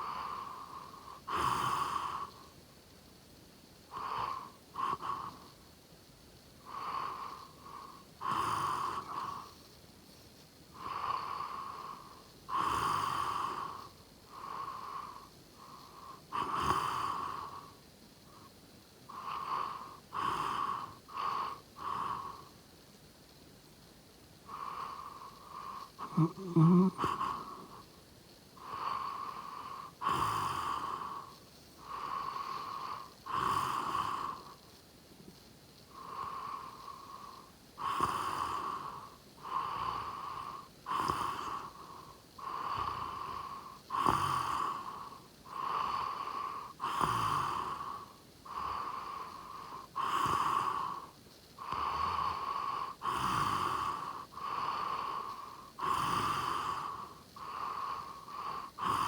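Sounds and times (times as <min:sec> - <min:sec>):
person snoring: 0:24.5 - 0:27.8, 0:28.6 - 0:31.3, 0:31.9 - 0:34.5, 0:36.0 - 0:59.0.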